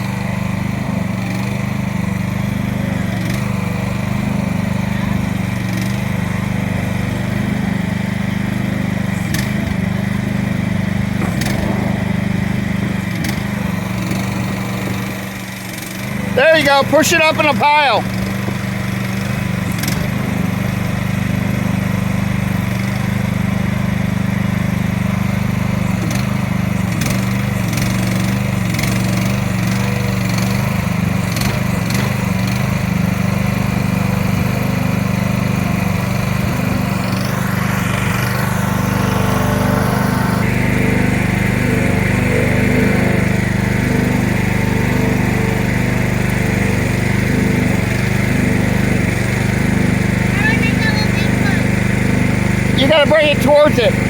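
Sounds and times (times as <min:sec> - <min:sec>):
excavator engine running under load: 0:00.0 - 0:54.0
knocks and clanks: 0:09.3 - 0:18.7.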